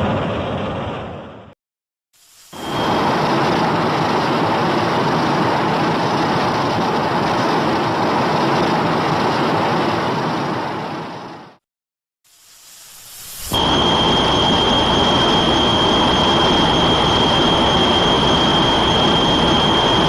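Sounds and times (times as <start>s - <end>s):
loud steady rushing noise: 2.5s - 11.6s, 13.2s - 20.0s.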